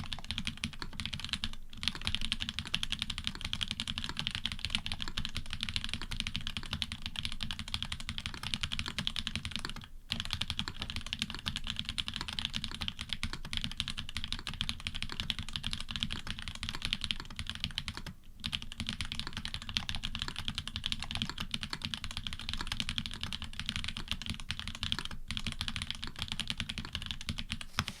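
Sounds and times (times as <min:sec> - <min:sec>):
mechanical keyboard typing: 0:00.0 - 0:28.0.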